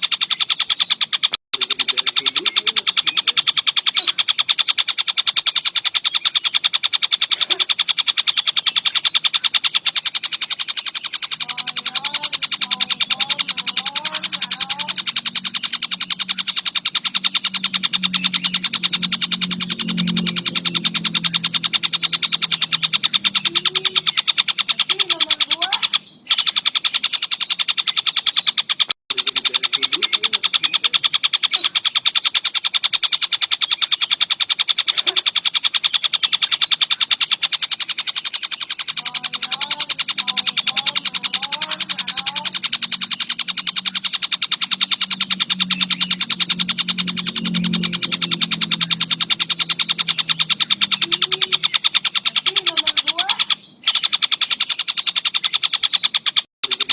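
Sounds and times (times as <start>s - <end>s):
faint lower bird chirps: 0.0s - 56.9s
kingfisher rattling trill: 0.0s - 56.9s.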